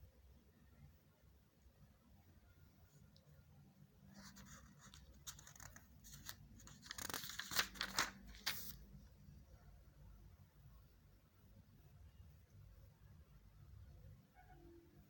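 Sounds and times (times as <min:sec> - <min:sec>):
rustling and crinkling: 0:04.1 - 0:08.8.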